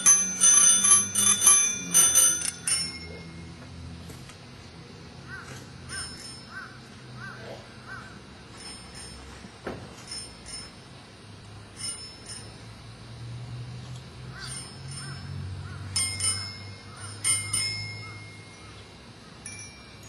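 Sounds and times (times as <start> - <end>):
high-pitched bells struck: 0.0 - 3.7, 10.1 - 10.9, 11.7 - 12.8, 14.4 - 20.0.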